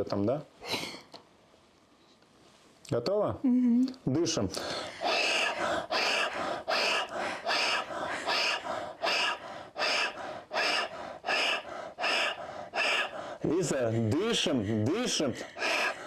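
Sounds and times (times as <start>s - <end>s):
person breathing fast: 4.5s - 16.0s.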